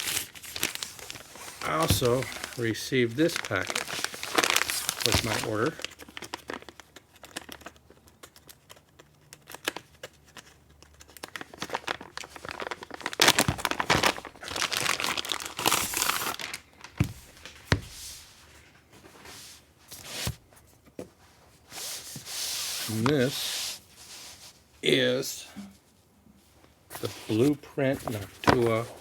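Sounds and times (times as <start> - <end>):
packaging crinkling and tearing: 0.0 - 17.8, 27.0 - 29.0.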